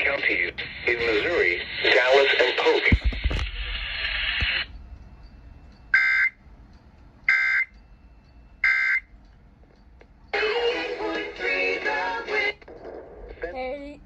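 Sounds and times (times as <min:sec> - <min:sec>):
music: 0:10.3 - 0:12.6.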